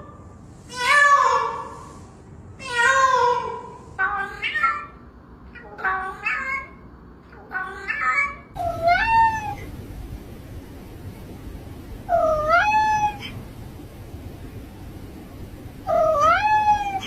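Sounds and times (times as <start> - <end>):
cat meowing: 5.6 - 6.8, 7.4 - 9.7, 12.1 - 13.4, 15.9 - 17.0.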